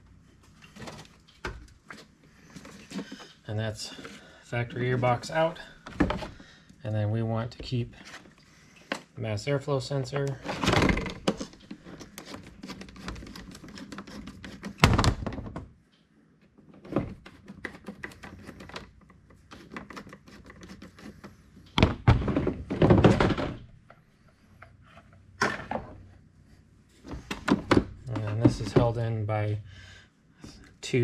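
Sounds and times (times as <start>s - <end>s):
plastic airbox clunking: 27.0s - 29.0s.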